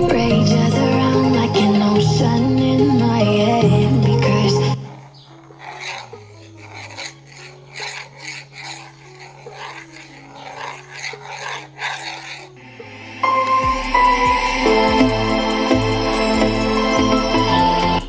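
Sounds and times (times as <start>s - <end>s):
scratchy rasping noise: 4.7s - 14.8s.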